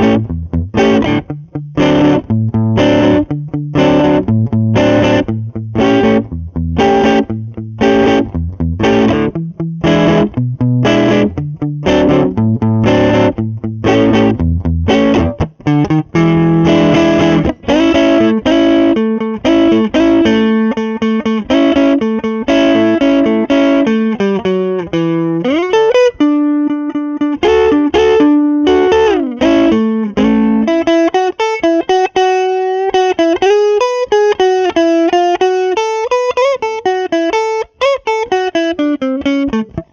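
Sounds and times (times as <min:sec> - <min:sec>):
overdriven electric guitar: 0:00.0 - 0:39.9.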